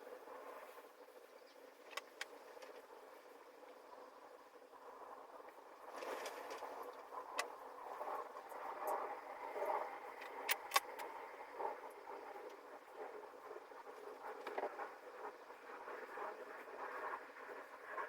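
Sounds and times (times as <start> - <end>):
sharp metallic clicks: 10.2 - 11.1.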